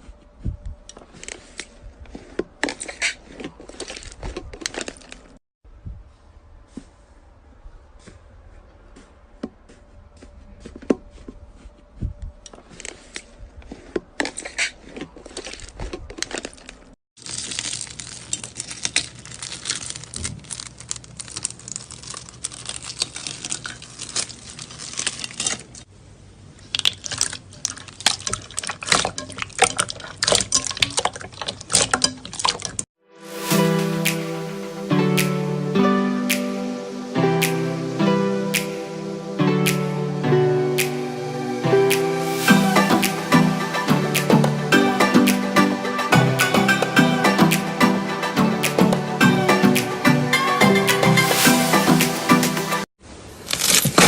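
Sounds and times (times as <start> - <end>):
slime crackling and popping: 17.2 - 25.9.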